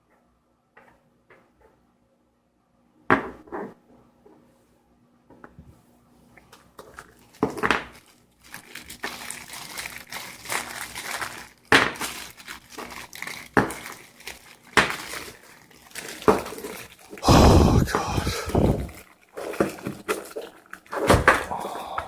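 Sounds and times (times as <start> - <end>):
plastic wrapping crinkling: 6.5 - 17.2.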